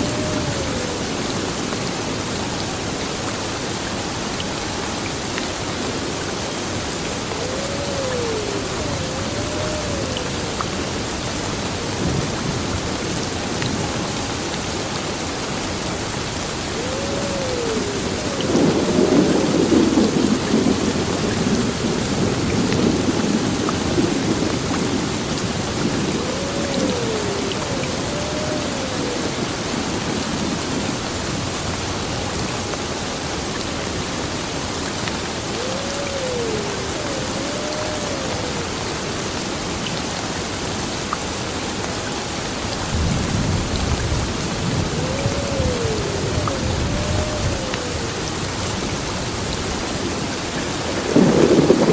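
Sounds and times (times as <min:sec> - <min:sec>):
heavy rain on a building: 0:00.0 - 0:51.9
thunder rumbling: 0:06.9 - 0:14.2, 0:16.5 - 0:31.4, 0:42.9 - 0:50.1, 0:50.8 - 0:51.9.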